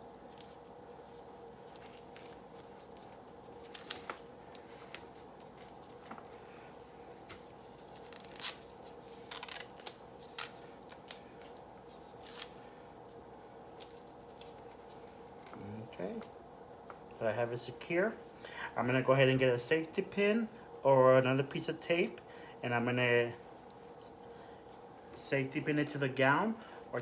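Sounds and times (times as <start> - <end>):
faint steady hum: 0.0 - 27.0
adhesive tape rustling and tearing: 0.3 - 6.6, 7.2 - 12.6, 13.7 - 15.6.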